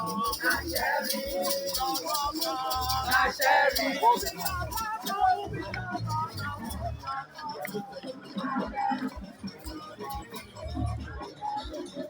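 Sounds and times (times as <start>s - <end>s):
pulsing bass beat: 0.0s - 7.3s, 9.2s - 11.3s
shaker percussion: 0.0s - 12.0s
upbeat music with singing: 0.0s - 12.0s.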